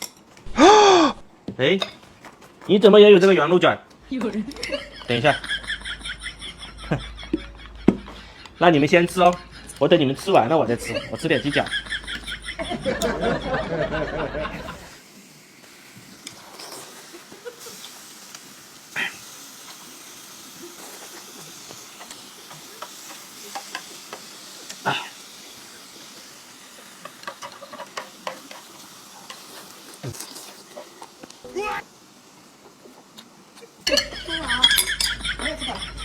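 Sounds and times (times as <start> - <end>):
faint steady hiss: 0.0 - 36.0
person speaking: 8.2 - 11.7
chopsticks and bowls clicking: 33.9 - 35.3.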